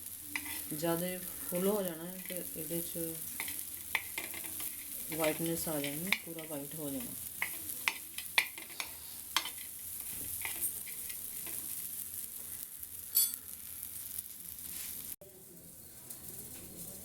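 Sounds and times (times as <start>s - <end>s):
spoon stirring against a pan: 0.0s - 13.5s
borax sizzling in a pan: 0.0s - 17.0s.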